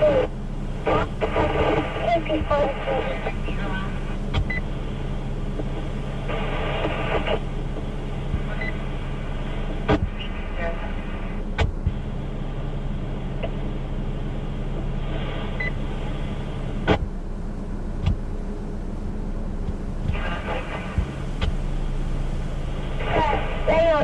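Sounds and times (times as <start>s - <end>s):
faint radio chatter: 0.0s - 4.2s, 10.0s - 11.4s, 20.1s - 21.2s, 22.9s - 24.0s
radio receiver hiss: 0.0s - 17.2s, 19.6s - 24.0s
electrical hum: 0.0s - 24.0s
sharp radio clicks: 19.7s - 21.6s.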